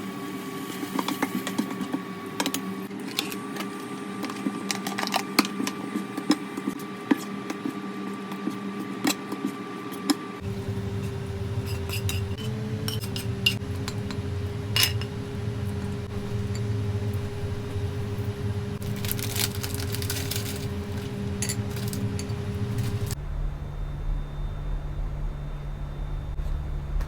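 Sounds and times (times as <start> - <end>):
steady low hum: 10.4 - 27.0
utensils clinking on dishes: 11.1 - 15.2, 18.8 - 23.2.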